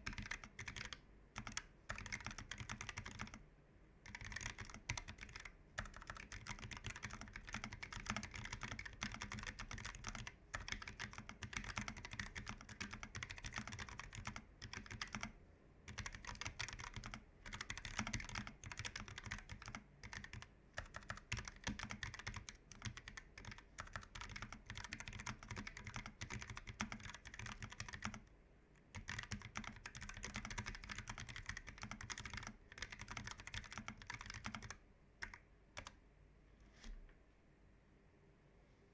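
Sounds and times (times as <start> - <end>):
keyboard typing clicks: 0.0 - 3.4, 4.0 - 15.3, 15.9 - 28.2, 28.9 - 36.0.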